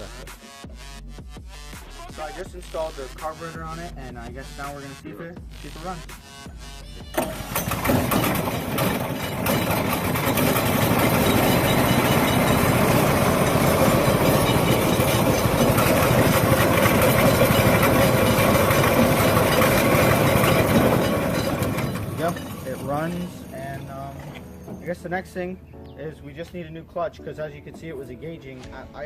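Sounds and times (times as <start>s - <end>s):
small engine running: 6.9s - 24.9s.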